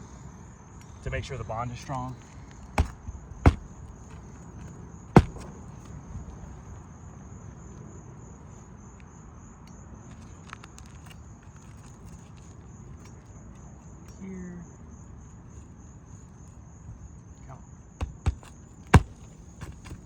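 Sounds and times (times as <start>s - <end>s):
crickets trilling: 0.0s - 20.0s
faint hammer taps: 2.8s - 3.8s, 5.2s - 5.5s
hammer blows on roofing nail: 2.8s - 4.2s, 5.2s - 5.8s, 18.0s - 20.0s.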